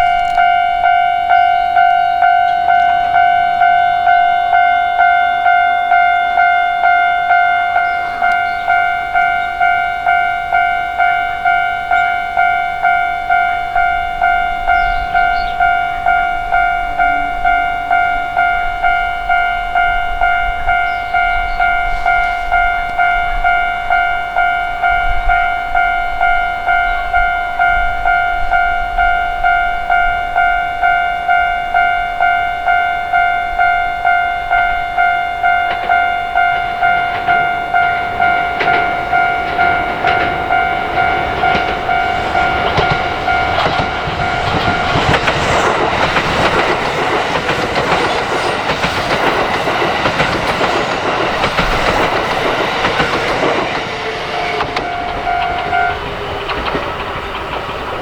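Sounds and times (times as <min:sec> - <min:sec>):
level crossing warning bell: 0:00.0 - 0:58.0
train rumbling: 0:00.0 - 0:58.0.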